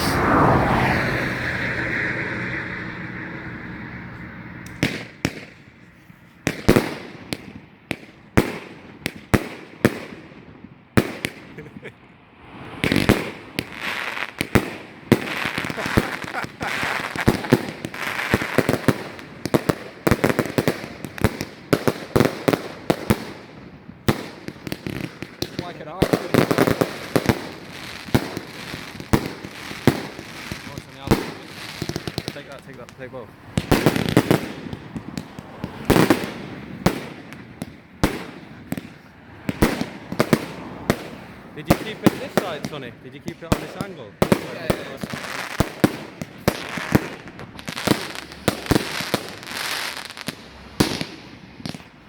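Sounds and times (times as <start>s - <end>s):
firework crackling hiss: 0.0s - 7.1s, 11.3s - 23.5s, 44.4s - 51.9s
firework bangs: 0.0s - 52.0s.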